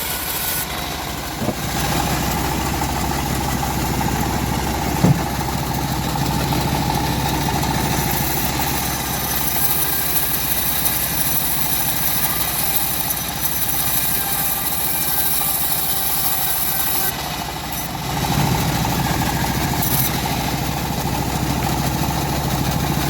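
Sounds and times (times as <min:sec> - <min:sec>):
bandsaw mill engine running: 0:00.0 - 0:23.0
sharp knock: 0:04.9 - 0:05.6.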